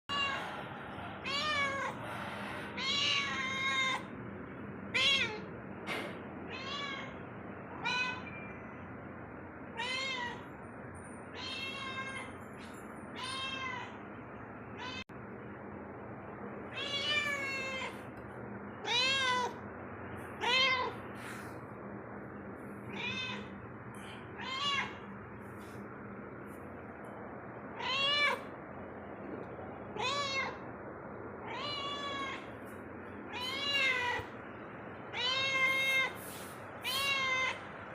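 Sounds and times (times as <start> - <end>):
cat meowing: 1.2 - 2.0, 2.8 - 4.1, 4.9 - 5.5, 6.5 - 7.2, 22.9 - 23.5, 24.4 - 25.0, 27.8 - 28.5, 29.9 - 30.6, 31.4 - 32.5, 33.3 - 34.4, 35.1 - 37.6.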